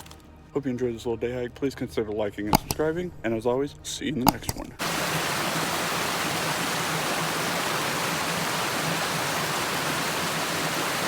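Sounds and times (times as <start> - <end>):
water rushing over waterfall: 4.8 - 11.0.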